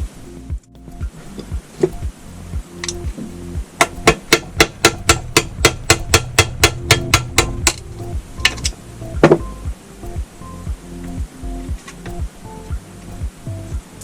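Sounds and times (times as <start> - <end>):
hammer on steel: 3.8 - 7.8.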